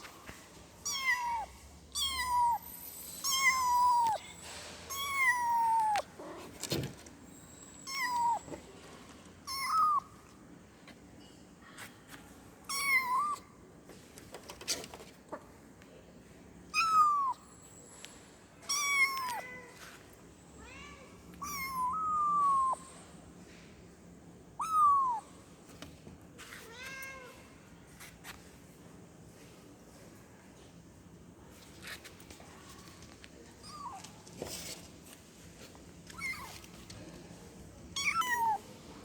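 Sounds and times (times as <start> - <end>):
kitten meowing: 3.2 - 4.2, 4.9 - 6.1, 7.9 - 8.5, 9.5 - 10.0, 12.7 - 13.4, 16.8 - 17.4, 18.7 - 19.6, 21.4 - 22.8, 24.6 - 25.2, 38.0 - 38.6.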